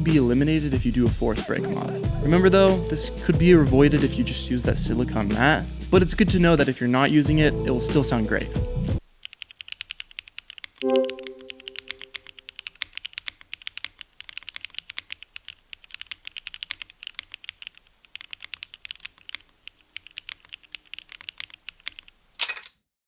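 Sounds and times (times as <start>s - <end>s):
short ringing tone: 10.8s - 12.1s.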